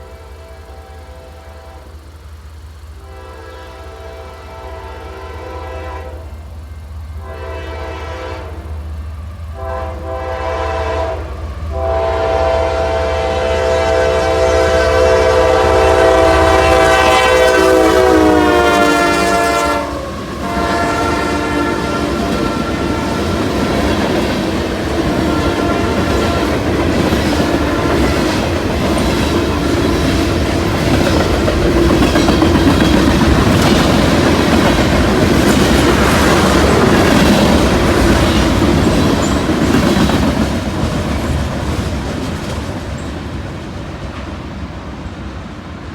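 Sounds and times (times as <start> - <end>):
train air horn blasts: 0.0 - 2.2, 2.9 - 6.6, 7.2 - 8.8, 9.5 - 30.3
train cars clickety-clack: 0.0 - 45.9.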